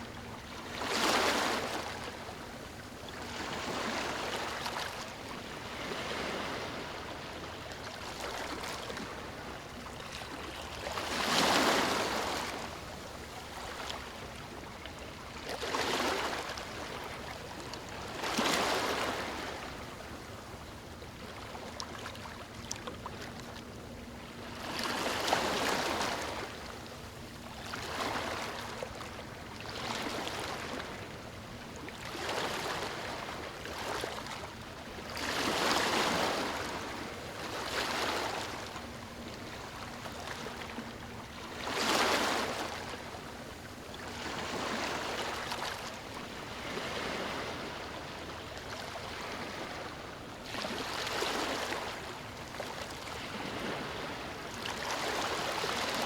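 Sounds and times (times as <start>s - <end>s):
ocean waves breaking on beach: 3.3s - 9.5s, 10.3s - 12.8s, 31.9s - 40.6s, 41.4s - 56.0s.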